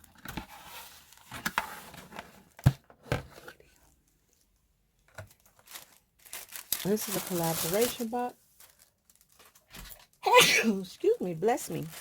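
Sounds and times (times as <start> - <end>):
packaging rustling: 5.0 - 10.2, 11.4 - 12.0.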